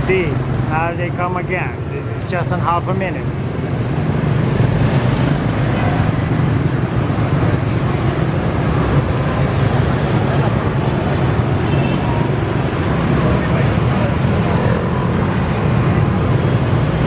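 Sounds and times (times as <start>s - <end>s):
motorbikes and scooters passing: 0.0s - 17.0s.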